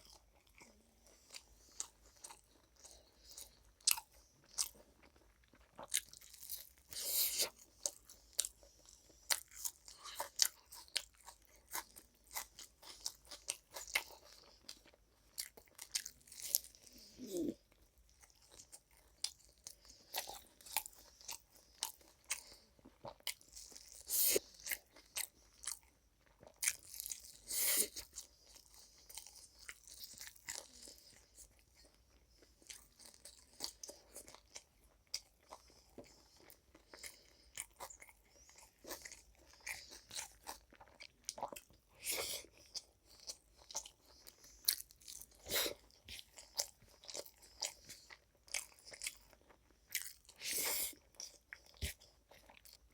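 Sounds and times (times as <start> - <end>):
person chewing and crunching food: 0.0 - 52.9.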